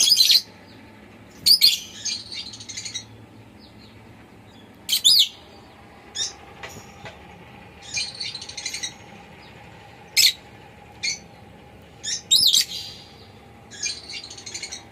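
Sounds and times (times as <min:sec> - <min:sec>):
lovebird chirping: 0:00.0 - 0:06.4, 0:12.0 - 0:14.9
bird buzzy chattering: 0:01.3 - 0:03.8, 0:04.8 - 0:14.9.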